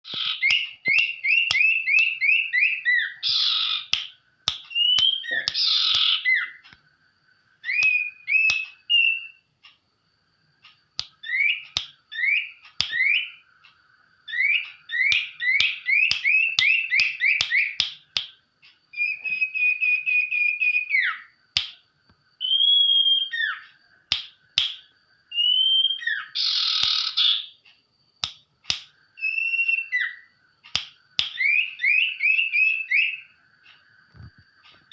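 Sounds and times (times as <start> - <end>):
harsh rasping bird calls: 0.0 - 4.0, 4.7 - 6.6, 25.4 - 27.6
songbird singing chattering song: 0.0 - 34.9
sharp ticks: 3.8 - 6.9.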